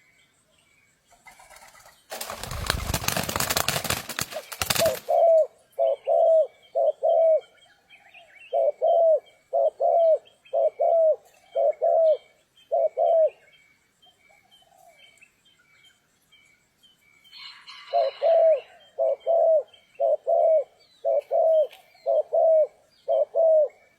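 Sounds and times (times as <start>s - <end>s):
dove cooing: 2.4s - 13.5s, 17.7s - 23.9s.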